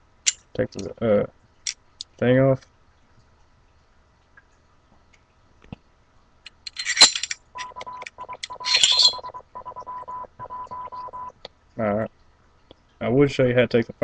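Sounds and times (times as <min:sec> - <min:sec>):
metal parts clinking and scraping: 0:06.5 - 0:09.4.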